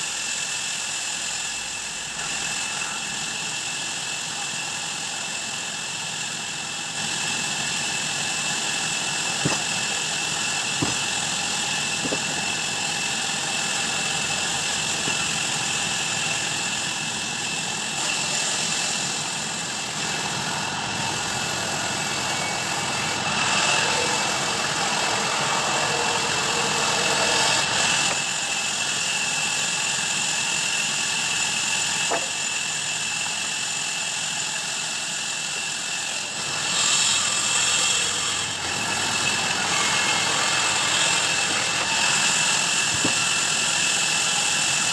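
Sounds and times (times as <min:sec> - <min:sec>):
bandsaw machinery whining: 0:00.0 - 0:44.9
sharp knocks: 0:09.4 - 0:10.0, 0:10.8 - 0:12.6.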